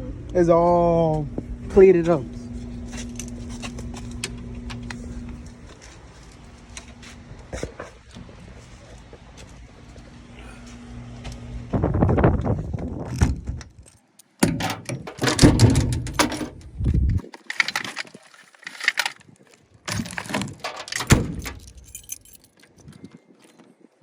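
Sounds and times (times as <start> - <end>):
metal parts clinking and rattling: 13.1 - 23.1.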